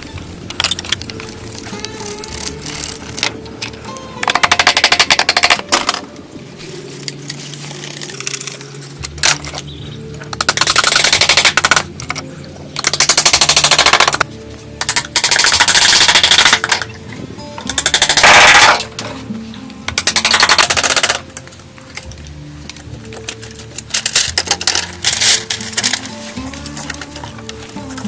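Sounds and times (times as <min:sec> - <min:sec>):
background music: 0:00.0 - 0:28.0
rapid mechanical hammering: 0:04.2 - 0:06.0, 0:10.4 - 0:12.2, 0:12.8 - 0:14.2.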